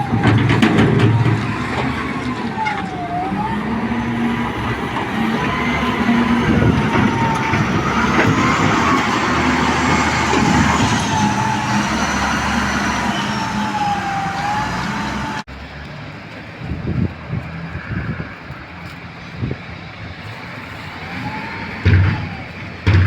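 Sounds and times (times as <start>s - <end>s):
diesel engine running under load: 0.0s - 23.0s
knocks: 21.8s - 23.0s.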